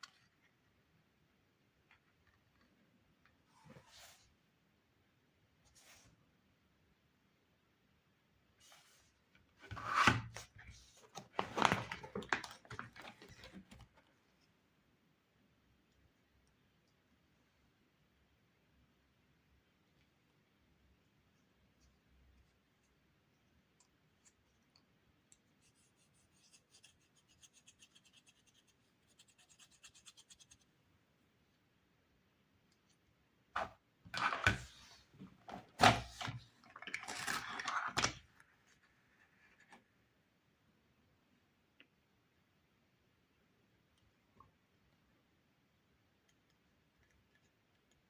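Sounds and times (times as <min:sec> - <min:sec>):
packaging rustling: 0:11.2 - 0:13.8
faint rapid scratching: 0:25.5 - 0:30.8.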